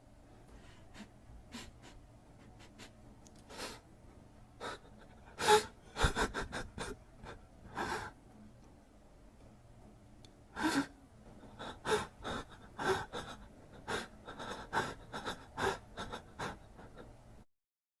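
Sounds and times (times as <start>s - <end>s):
man sobbing and whimpering: 4.6s - 8.1s, 10.6s - 17.2s.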